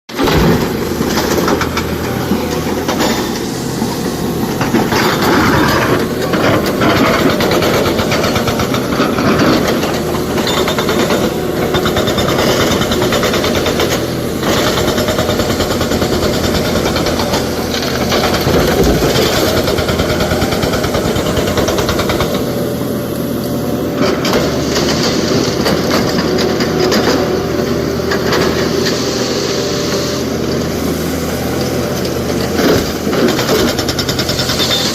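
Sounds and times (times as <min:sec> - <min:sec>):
rock and steel clanking: 0:00.1 - 0:22.6
excavator diesel engine: 0:00.1 - 0:34.9.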